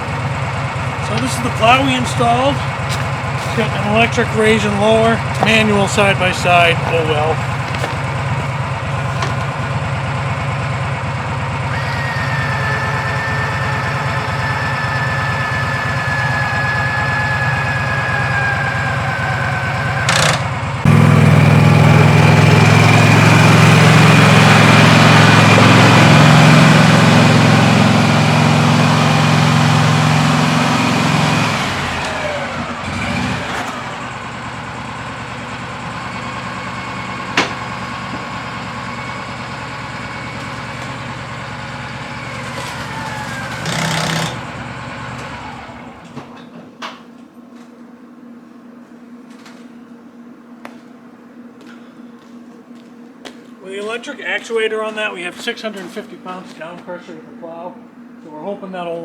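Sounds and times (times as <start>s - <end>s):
vehicle engine idling: 0.0s - 46.3s
loud steady engine running: 0.0s - 46.6s.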